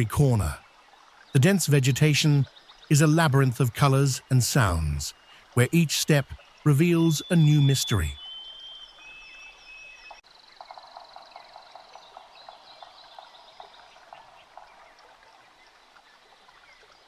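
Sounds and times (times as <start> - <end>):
insects and frogs calling: 0.0 - 17.0
scattered chirps: 2.9 - 8.2.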